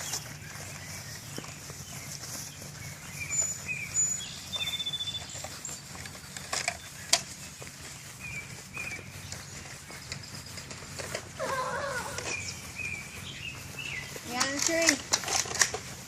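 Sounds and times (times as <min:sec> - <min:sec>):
wild birds chirping: 0:00.0 - 0:16.0
sharp clicks: 0:14.2 - 0:16.0.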